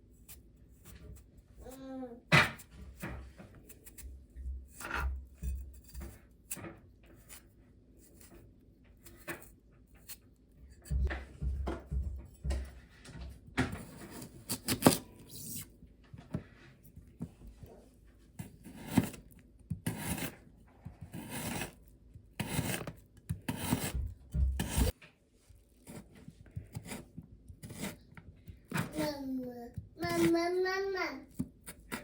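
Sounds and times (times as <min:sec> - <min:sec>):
rasping and rubbing strokes: 0:21.0 - 0:21.8, 0:22.4 - 0:24.9.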